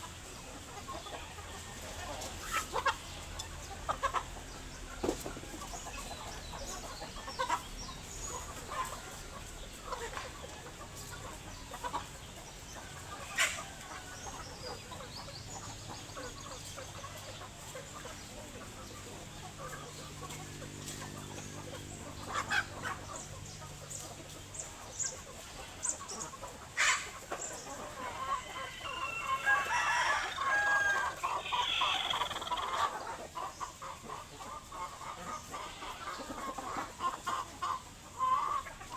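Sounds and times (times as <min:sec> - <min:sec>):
chickens clucking: 0:00.0 - 0:38.9
rooster crowing: 0:28.3 - 0:32.6.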